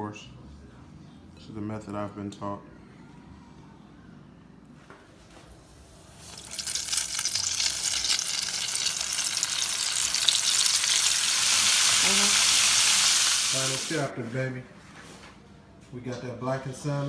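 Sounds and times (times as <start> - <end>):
food frying in hot oil: 6.2 - 14.1.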